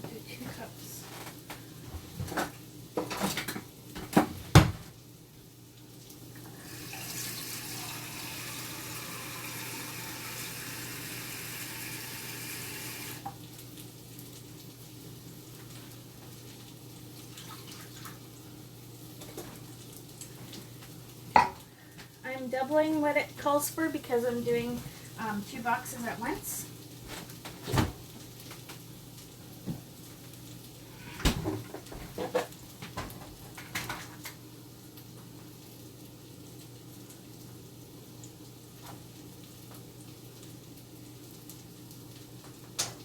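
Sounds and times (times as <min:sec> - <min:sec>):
kitchen tap running: 0:06.4 - 0:13.4, 0:17.2 - 0:18.3
kitchenware clattering: 0:21.4 - 0:21.6.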